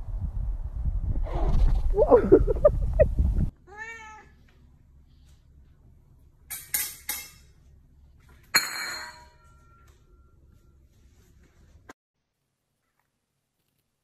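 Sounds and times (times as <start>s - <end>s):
cat meowing: 3.6s - 4.4s.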